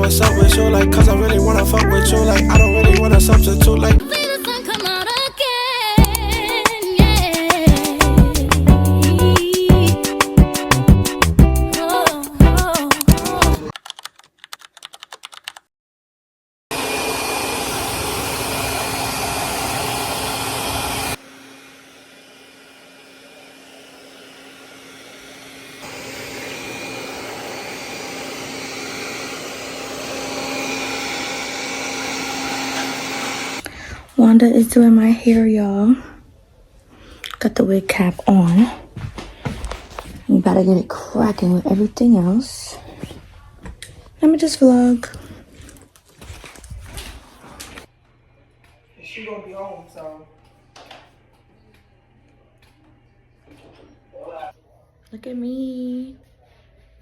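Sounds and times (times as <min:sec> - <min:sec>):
song with sung melody and beat: 0:00.0 - 0:13.7
hair dryer blowing: 0:16.7 - 0:33.7.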